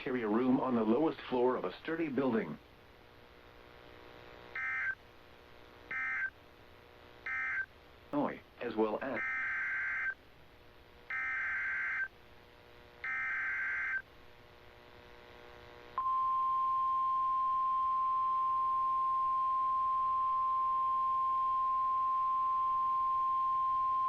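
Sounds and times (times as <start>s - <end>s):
steady attention tone: 4.4s - 5.0s, 5.8s - 6.4s, 7.0s - 7.8s, 9.0s - 10.2s, 11.0s - 12.2s, 13.0s - 14.1s, 16.0s - 24.0s
warbling data tones: 4.5s - 5.0s, 5.9s - 6.3s, 7.2s - 7.7s.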